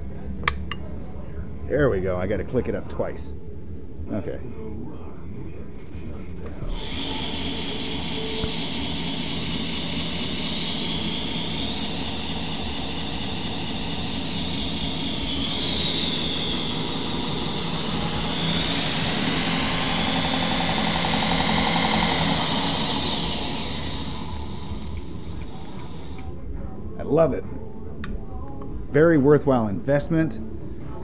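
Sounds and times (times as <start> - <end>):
belt grinder whine: 5.9 - 26.5.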